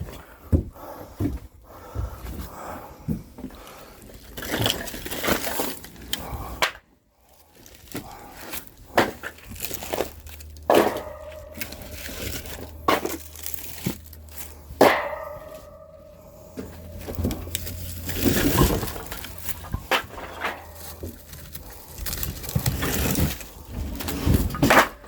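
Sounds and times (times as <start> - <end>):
rustling: 7.3 - 25.0
firewood logs knocking: 10.4 - 23.3.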